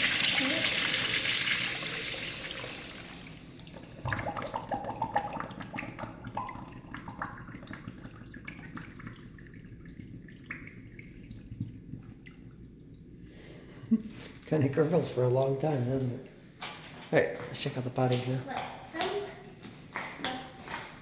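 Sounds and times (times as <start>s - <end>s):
toilet flush water rushing: 0.0s - 10.2s
toilet gurgling and dripping: 0.0s - 13.3s.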